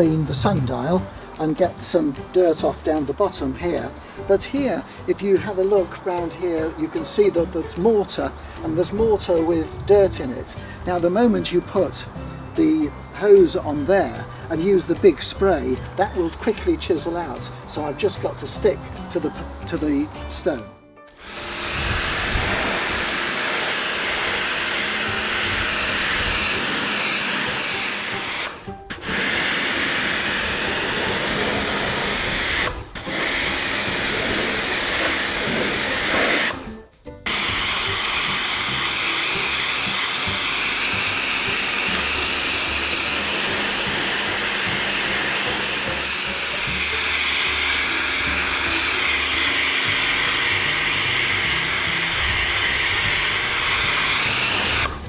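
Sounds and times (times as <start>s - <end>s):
pressure washer motor hum: 0.0s - 55.0s
pressure washer spraying on stone: 21.2s - 55.0s.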